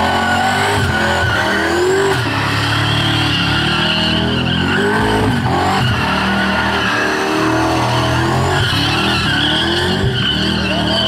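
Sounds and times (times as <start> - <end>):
car engine revving: 0.0 - 11.0
tyres squealing: 0.1 - 11.0.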